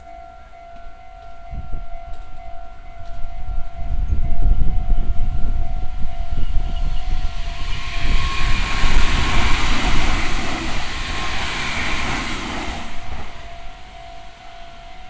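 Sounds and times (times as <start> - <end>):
electronic crossing warning bell: 0.0 - 7.9, 13.0 - 15.0
train wheels rumbling on rail: 0.0 - 15.0.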